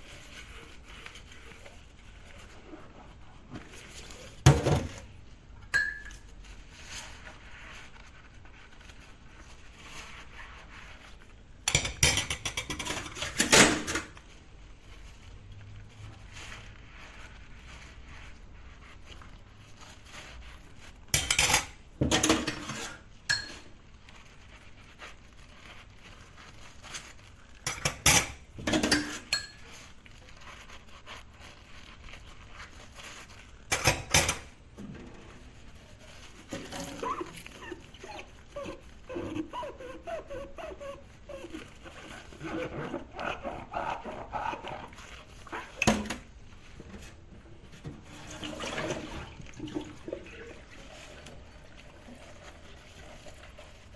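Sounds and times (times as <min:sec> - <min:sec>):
dishes and cutlery clattering: 0:05.7 - 0:06.2, 0:11.6 - 0:14.2, 0:21.2 - 0:23.6, 0:27.7 - 0:29.6, 0:33.7 - 0:34.5.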